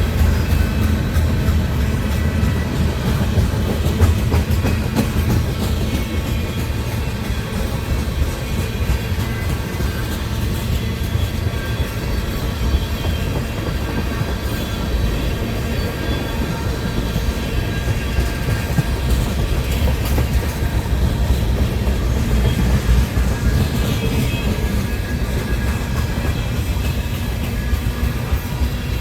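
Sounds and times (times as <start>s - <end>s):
clicking over rail joints: 0.0s - 15.6s
train wheels rumbling on rails: 0.0s - 29.0s.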